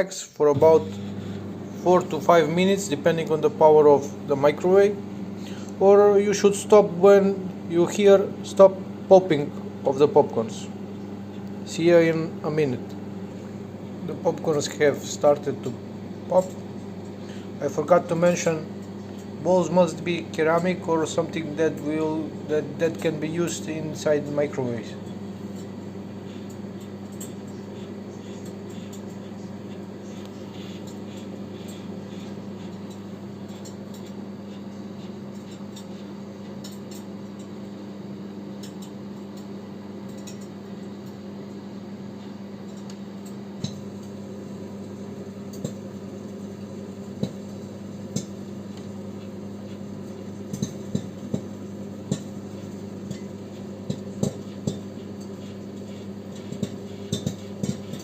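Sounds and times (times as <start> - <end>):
microwave oven humming: 0.0 - 58.0
popcorn popping: 43.6 - 58.0.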